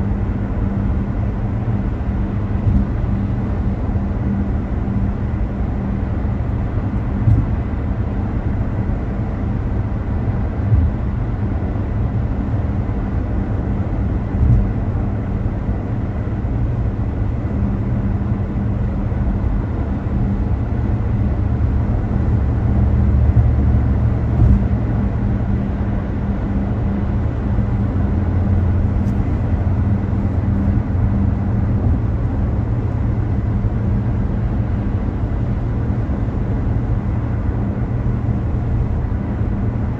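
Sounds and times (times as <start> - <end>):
car road and engine rumble: 0.0 - 39.9
faint steady hum: 0.0 - 39.9
brief thumps: 2.6 - 3.0, 7.2 - 7.6, 10.7 - 11.0, 23.2 - 24.8.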